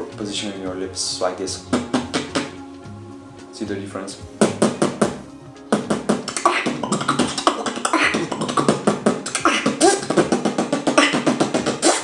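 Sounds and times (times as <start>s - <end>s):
beatboxing: 1.6s - 2.6s, 4.4s - 12.0s.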